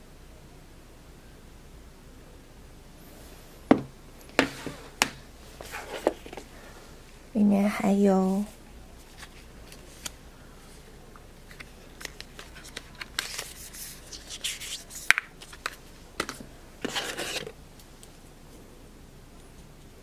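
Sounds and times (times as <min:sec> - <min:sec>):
rustling cardboard and paper packaging: 0:04.3 - 0:06.7, 0:08.2 - 0:17.6.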